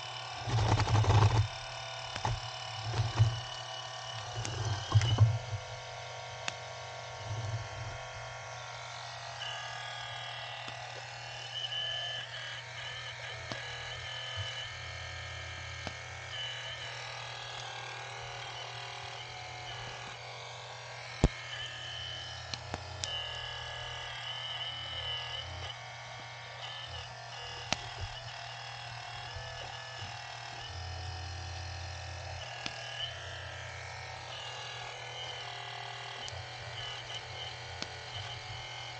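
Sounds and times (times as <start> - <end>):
hydraulic pump whining: 0.0 - 38.9
sharp clicks: 0.4 - 5.7, 15.8 - 20.2, 32.3 - 33.4, 35.0 - 38.8.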